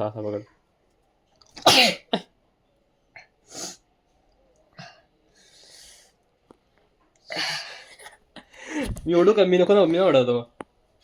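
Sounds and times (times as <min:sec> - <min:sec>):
person sneezing: 0:01.6 - 0:02.3
person sniffing: 0:03.5 - 0:03.8.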